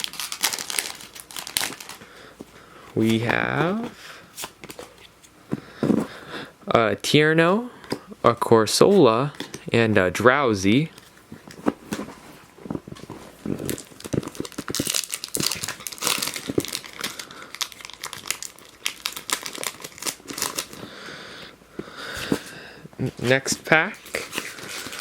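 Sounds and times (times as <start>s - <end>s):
foil wrapper crinkling and tearing: 0.0s - 2.2s, 13.3s - 20.9s, 23.1s - 25.0s.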